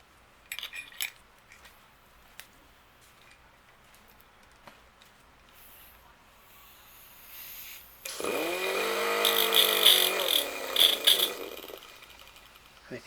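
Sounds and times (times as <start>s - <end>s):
small grinder running: 8.0s - 13.0s
high-pitched grinding on metal: 8.1s - 13.0s.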